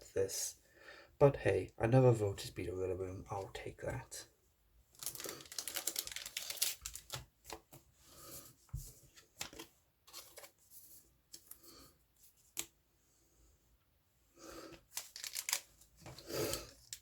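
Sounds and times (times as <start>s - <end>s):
trading cards rustling: 4.9s - 7.8s, 9.4s - 10.7s, 14.9s - 17.0s.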